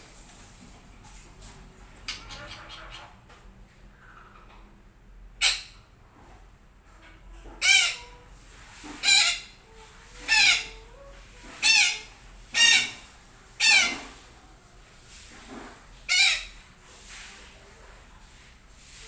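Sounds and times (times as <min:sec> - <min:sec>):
parakeet screeching squawks: 0:02.1 - 0:03.2, 0:07.6 - 0:08.2, 0:09.0 - 0:09.5, 0:10.2 - 0:10.8, 0:11.6 - 0:13.0, 0:13.6 - 0:14.1, 0:16.1 - 0:16.5.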